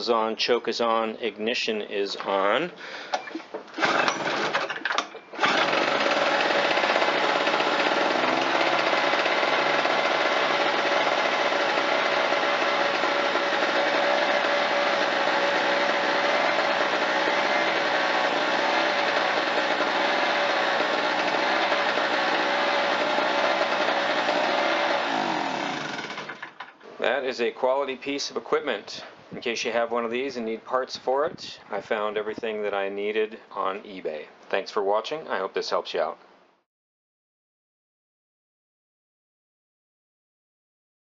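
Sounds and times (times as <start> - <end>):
generator engine running: 5.4 - 26.4.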